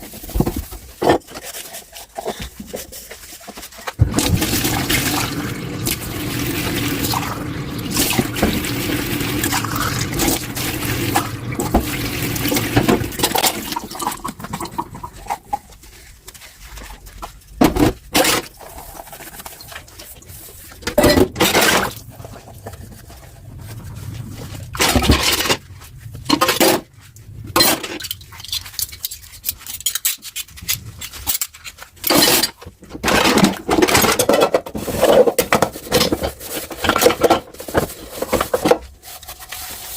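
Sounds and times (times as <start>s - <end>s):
water running from tap into sink: 4.0s - 15.0s
splashing: 4.0s - 15.2s.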